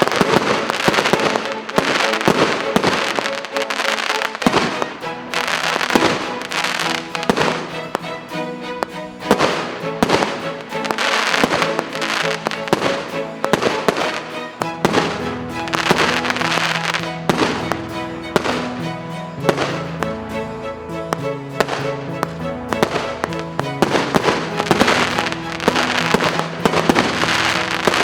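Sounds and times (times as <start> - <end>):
fireworks bangs: 0.0 - 8.0, 8.8 - 20.0, 21.1 - 28.0
background music: 0.0 - 28.0.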